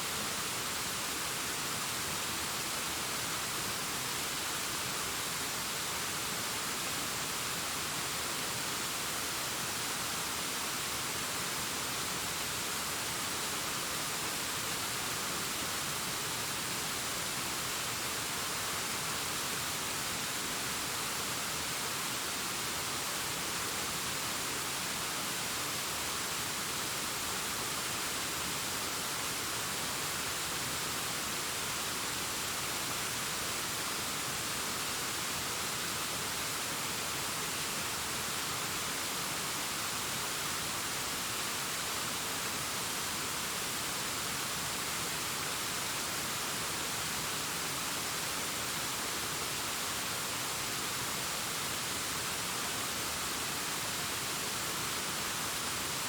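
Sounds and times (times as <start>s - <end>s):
distant waterfall hiss: 0.0s - 56.0s.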